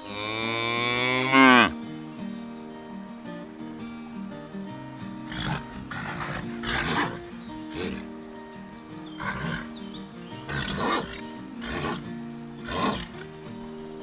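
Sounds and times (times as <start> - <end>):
cattle bellowing and mooing: 0.0 - 1.8, 9.2 - 9.7, 10.5 - 12.1, 12.7 - 13.2
background music: 0.0 - 14.0.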